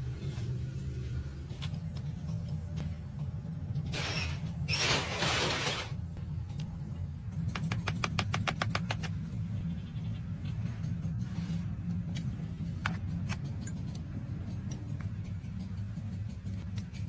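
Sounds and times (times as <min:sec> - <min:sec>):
steady low hum: 0:00.0 - 0:17.0
rapid evenly spaced clicks: 0:07.4 - 0:11.1.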